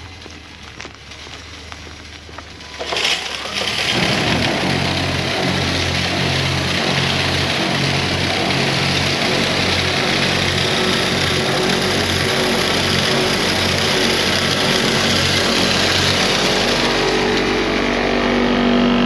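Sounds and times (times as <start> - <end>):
road and wind hiss: 0.0 - 5.4
vehicle engine humming: 0.0 - 19.0.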